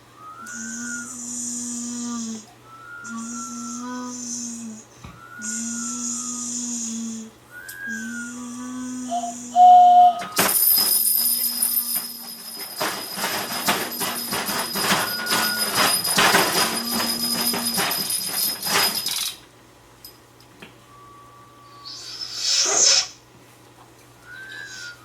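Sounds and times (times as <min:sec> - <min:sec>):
high ringing: 0:09.1 - 0:19.4
rattling clatter of knocks: 0:10.4 - 0:19.3.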